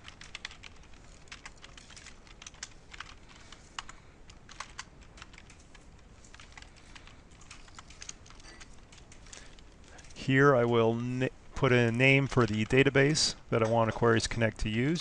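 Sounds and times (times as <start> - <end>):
typing on a computer keyboard: 0.0 - 10.2.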